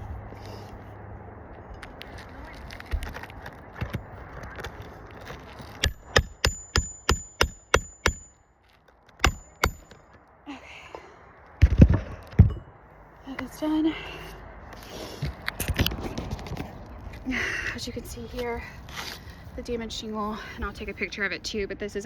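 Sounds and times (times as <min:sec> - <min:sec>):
hammer striking nail: 0:05.8 - 0:08.3, 0:09.2 - 0:10.0.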